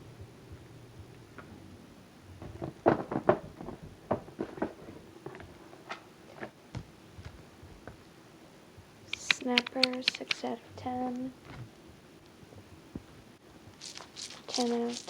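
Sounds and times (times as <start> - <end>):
plastic fidget toy clicking: 9.1 - 10.6.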